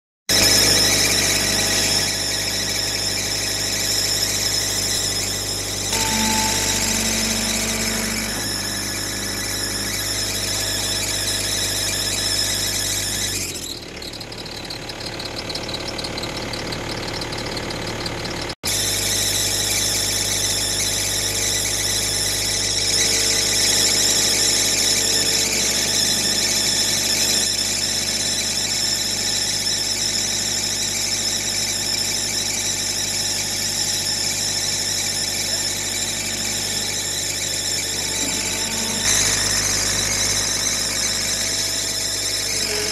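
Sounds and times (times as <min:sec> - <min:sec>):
high-pitched whine: 0:00.3 - 0:14.2, 0:18.7 - 0:42.9
diesel engine running: 0:00.5 - 0:18.6, 0:35.4 - 0:42.9.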